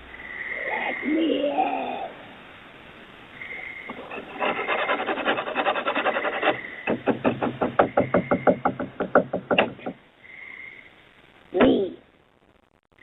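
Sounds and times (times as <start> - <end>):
rapid knocking: 3.9 - 10.0
scratching on a door: 3.9 - 10.0.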